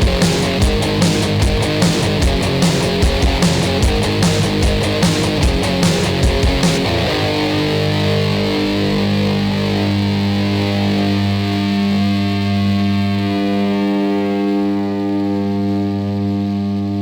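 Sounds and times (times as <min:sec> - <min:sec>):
distorted electric guitar chord: 0:00.0 - 0:17.0.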